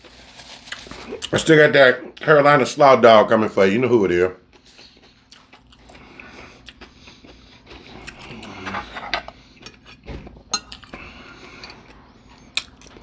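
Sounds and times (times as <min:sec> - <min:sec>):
cutlery clinking on a dish: 0:10.5 - 0:10.9.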